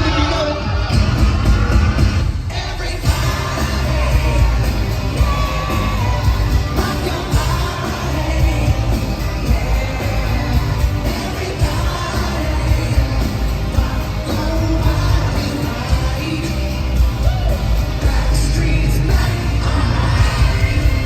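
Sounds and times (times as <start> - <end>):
crowd noise: 0.0 - 21.0
live pop-rock music with singing: 0.0 - 21.0.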